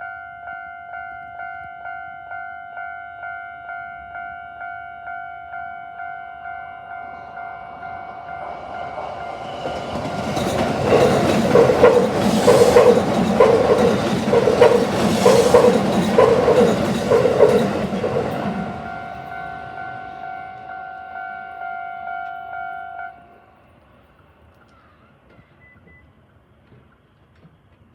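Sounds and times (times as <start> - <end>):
level-crossing bell ringing: 0.0 - 11.7
electric train passing: 5.6 - 27.2
wheels clacking over rail joints: 8.5 - 19.4.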